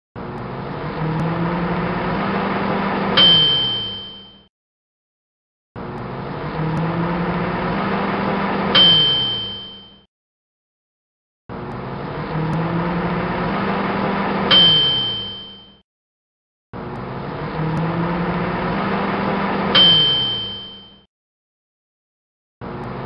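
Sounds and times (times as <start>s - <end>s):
microwave oven humming: 0.2s - 4.3s, 5.8s - 10.0s, 11.5s - 15.7s, 16.8s - 21.0s
microwave bell ding: 3.2s - 4.5s, 8.7s - 10.1s, 14.5s - 15.8s, 19.7s - 21.1s.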